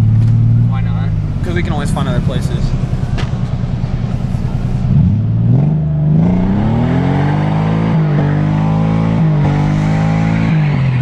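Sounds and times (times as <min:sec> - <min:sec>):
car engine revving hard: 0:04.9 - 0:11.0.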